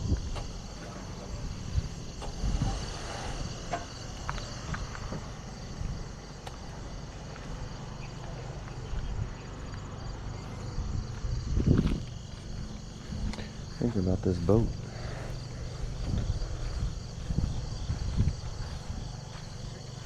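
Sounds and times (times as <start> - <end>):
insects chirring: 0.0 - 20.0
low rumble: 0.0 - 20.0.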